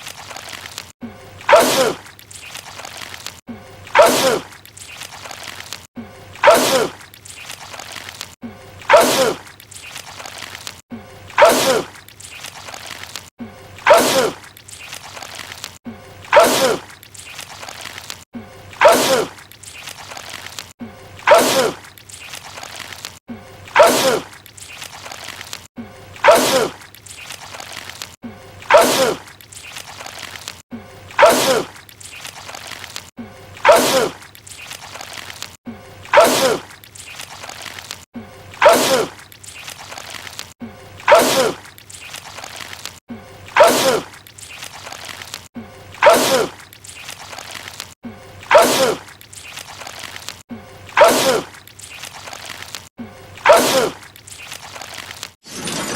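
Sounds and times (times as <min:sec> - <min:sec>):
man sneezing loudly: 0:53.4 - 0:54.0.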